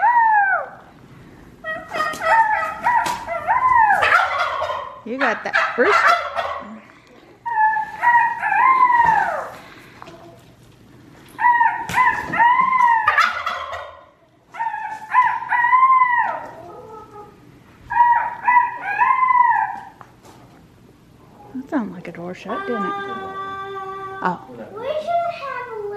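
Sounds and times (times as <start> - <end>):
rooster crowing: 0.0 - 0.8, 11.4 - 16.6.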